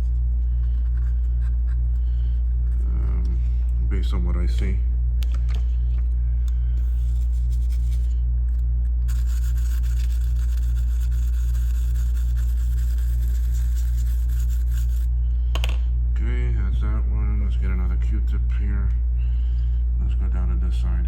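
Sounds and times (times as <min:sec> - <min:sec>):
pulsing low hum: 0:00.0 - 0:21.0.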